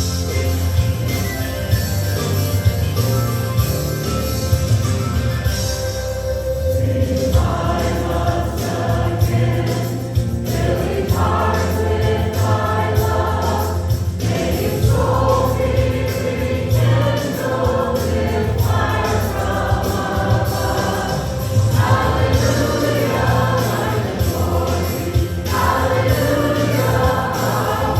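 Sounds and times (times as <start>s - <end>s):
band with strong bass line: 0.0s - 27.9s
group of voices singing: 6.5s - 27.9s.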